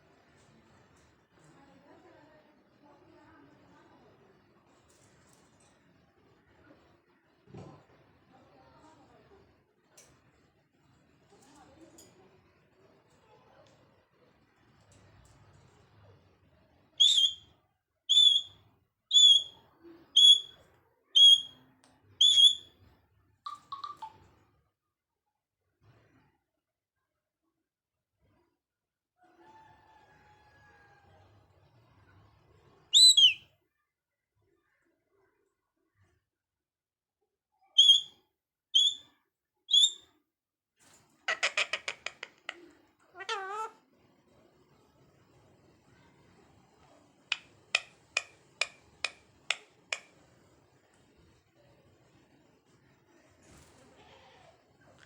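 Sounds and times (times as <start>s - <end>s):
parrot whistling high note: 17.0s - 17.4s, 18.1s - 19.6s, 20.2s - 20.6s, 21.2s - 21.6s, 22.2s - 22.7s, 33.0s - 33.4s, 37.8s - 38.1s, 38.8s - 39.0s, 39.7s - 40.0s.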